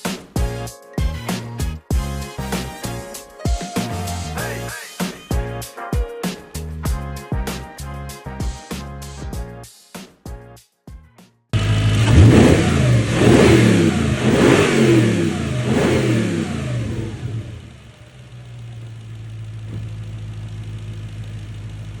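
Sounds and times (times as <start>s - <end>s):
car engine revving and idling: 11.6s - 22.0s.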